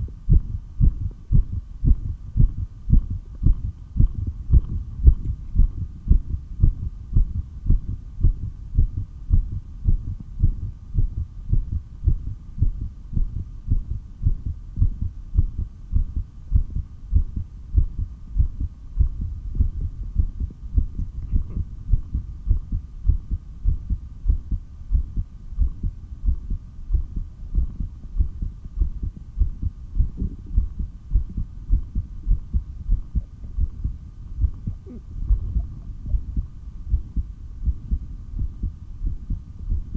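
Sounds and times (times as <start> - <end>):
faint hum: 0.0 - 39.9
heartbeat thudding: 0.0 - 39.9.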